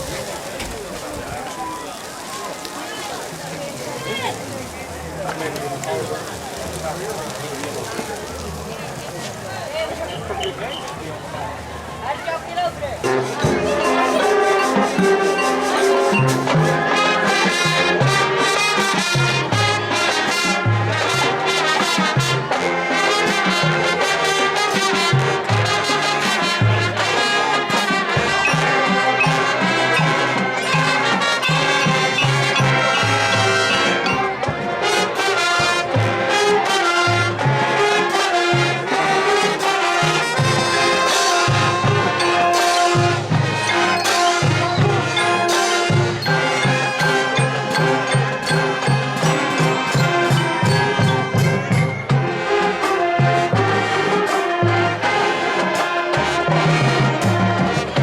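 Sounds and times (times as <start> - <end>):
brass melody: 9.5 - 58.0
steady drum beat: 12.8 - 58.0.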